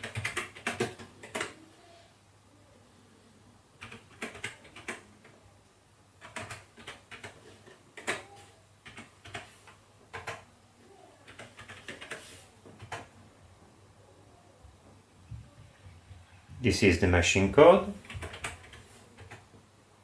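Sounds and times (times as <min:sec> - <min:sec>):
keyboard keys clicking: 0:00.0 - 0:01.6, 0:03.8 - 0:05.4, 0:06.2 - 0:10.5, 0:11.3 - 0:13.1, 0:18.0 - 0:19.4.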